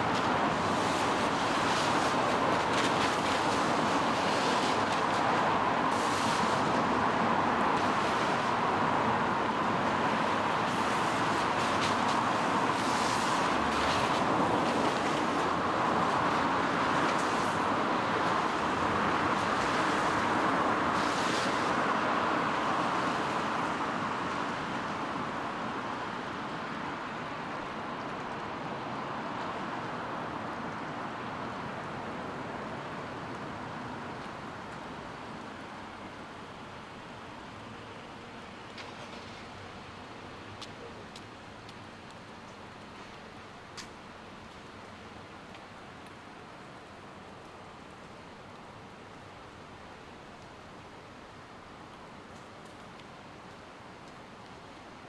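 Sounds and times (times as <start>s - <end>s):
car tyres hissing on wet road: 0.0s - 26.6s
light rain patter: 0.0s - 55.0s.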